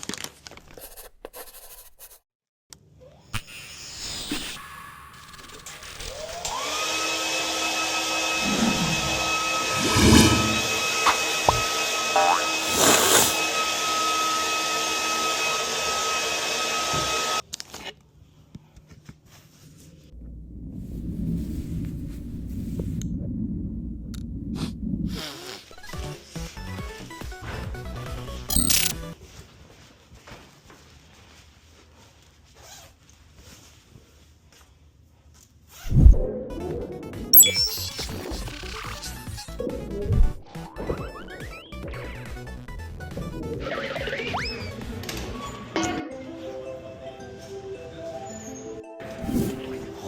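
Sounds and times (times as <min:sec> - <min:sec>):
machine rushing with high whine: 0:08.2 - 0:11.7.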